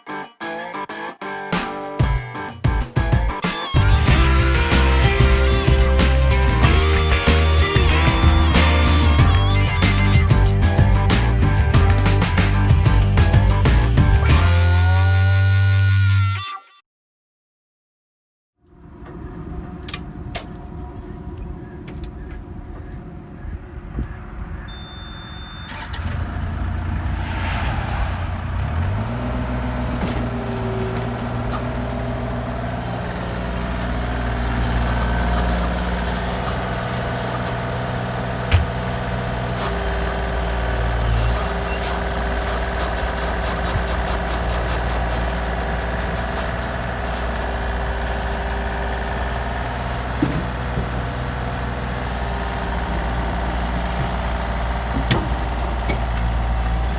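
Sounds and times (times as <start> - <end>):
heavy diesel engine running: 3.8 - 14.5, 18.9 - 56.9
short single-tone beep: 24.7 - 25.8.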